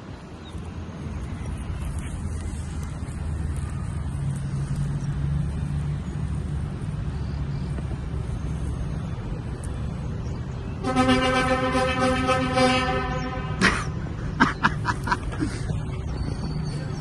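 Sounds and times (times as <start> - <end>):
vehicle rumble: 0.0 - 17.0
multi-tone horn blast: 10.8 - 14.0.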